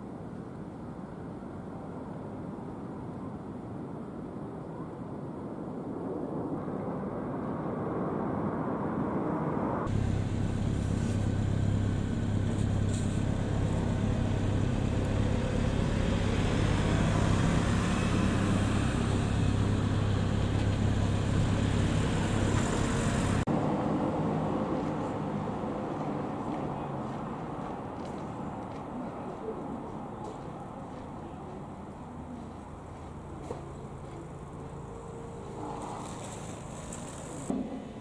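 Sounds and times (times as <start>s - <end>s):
vehicle engine and road noise: 9.8s - 38.0s.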